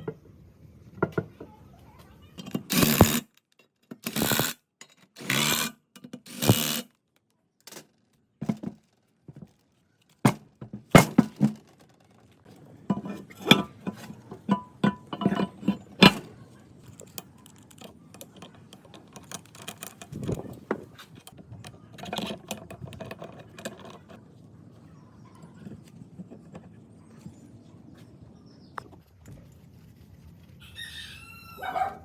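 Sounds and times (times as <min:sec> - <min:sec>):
metal parts clinking: 0:02.4 - 0:06.8, 0:10.9 - 0:24.2.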